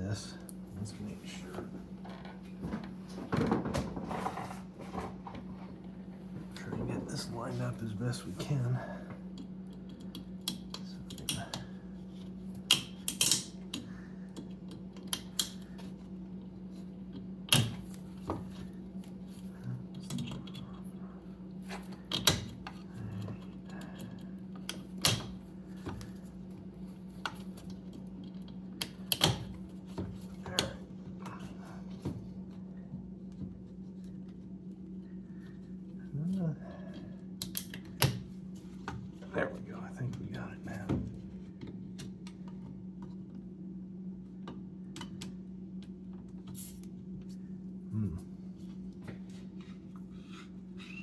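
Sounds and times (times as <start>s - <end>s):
steady low hum: 0.0s - 51.0s.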